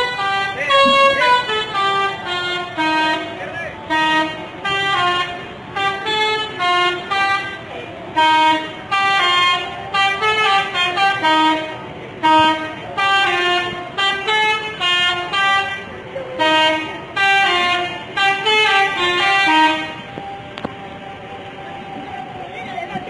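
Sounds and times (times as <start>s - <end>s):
bus musical horn playing a tune: 0.0s - 20.7s.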